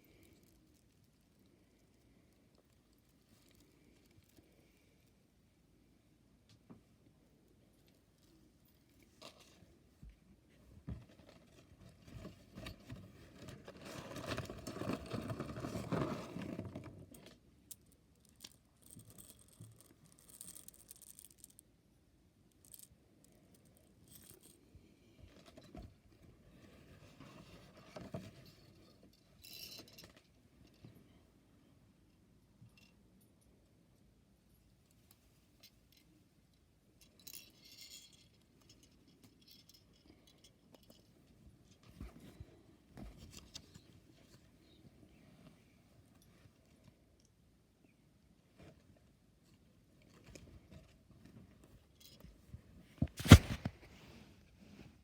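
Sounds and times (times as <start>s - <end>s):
handling rustling: 52.9s - 54.8s.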